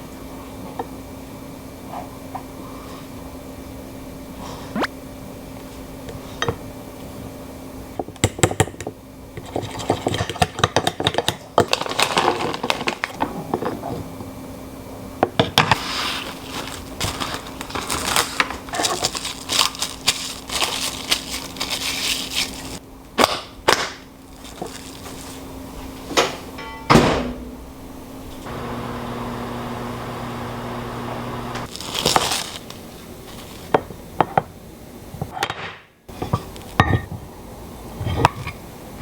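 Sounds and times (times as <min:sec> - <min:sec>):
steady low hum: 0:27.5 - 0:31.7.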